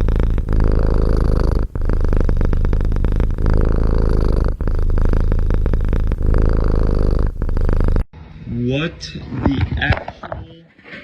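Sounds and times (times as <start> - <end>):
cat purring loudly: 0.0 - 8.1.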